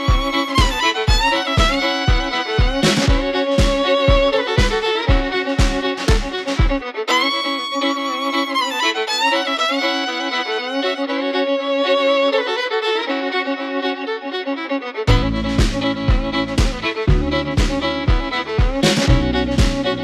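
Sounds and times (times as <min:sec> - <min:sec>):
low beat and bass: 0:00.0 - 0:06.8, 0:15.1 - 0:20.0
instrumental music: 0:00.0 - 0:20.0.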